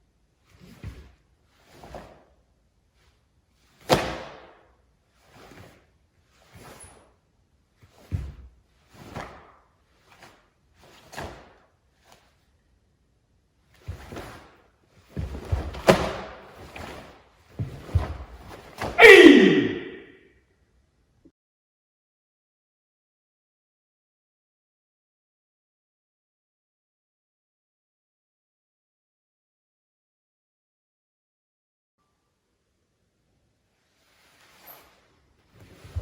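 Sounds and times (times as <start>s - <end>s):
short shout falling in pitch: 18.9s - 20.2s.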